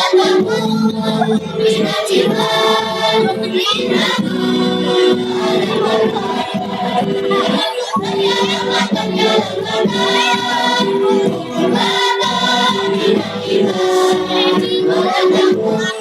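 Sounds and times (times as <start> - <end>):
children's choir singing: 0.0 - 16.0.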